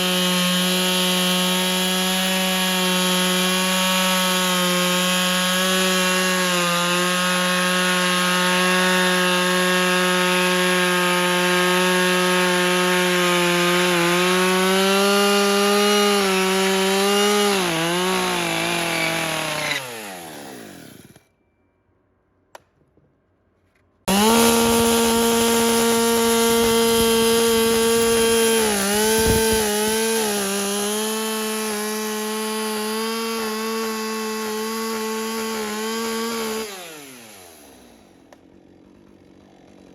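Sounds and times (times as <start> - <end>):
electric planer motor whining: 11.7 - 21.2, 24.1 - 32.1.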